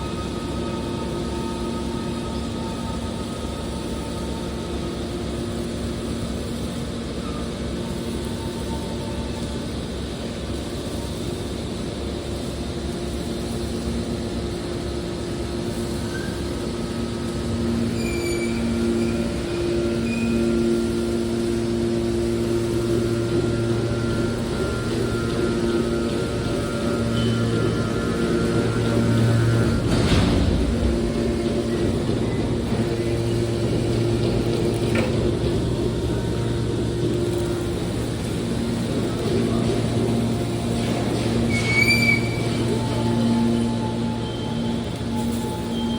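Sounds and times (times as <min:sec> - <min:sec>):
hydraulic power unit humming: 0:00.0 - 0:45.9
high-pitched metallic squeal: 0:15.8 - 0:45.9
brief high squeals: 0:18.0 - 0:20.8, 0:41.5 - 0:42.8.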